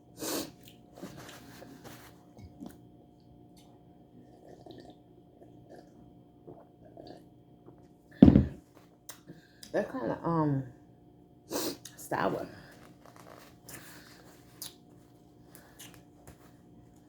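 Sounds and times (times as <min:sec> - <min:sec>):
wet chewing and mouth smacks: 0:14.5 - 0:14.8, 0:15.5 - 0:16.4.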